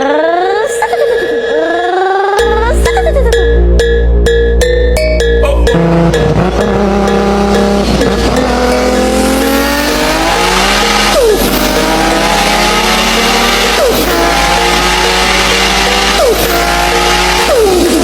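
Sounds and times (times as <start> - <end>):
car engine accelerating hard: 5.6 - 18.0.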